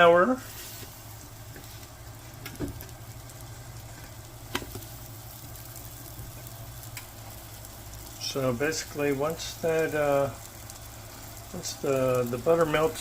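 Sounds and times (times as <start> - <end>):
butter sizzling in a pan: 0.0 - 13.0
low steady hum: 0.0 - 13.0.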